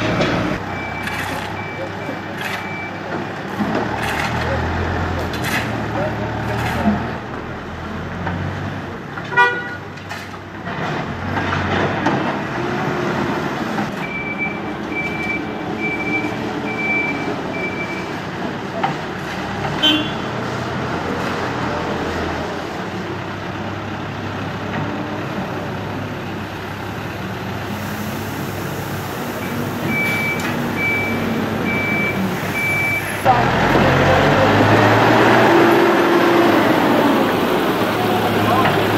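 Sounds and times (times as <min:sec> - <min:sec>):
heavy vehicle engine running: 0:00.0 - 0:09.3, 0:09.9 - 0:38.9
reversing alarm beeps: 0:00.1 - 0:03.0, 0:14.0 - 0:18.1, 0:29.8 - 0:33.2.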